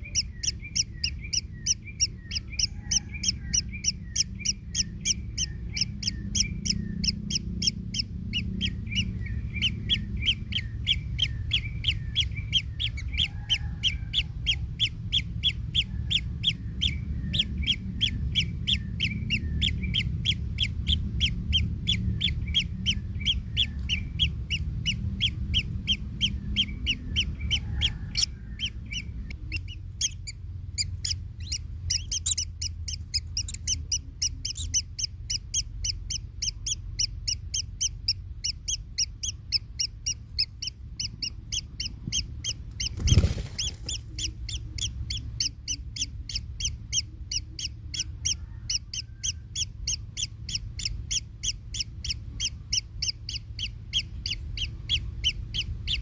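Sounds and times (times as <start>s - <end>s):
low rumble: 0.0s - 43.0s
nestlings calling: 0.0s - 56.0s.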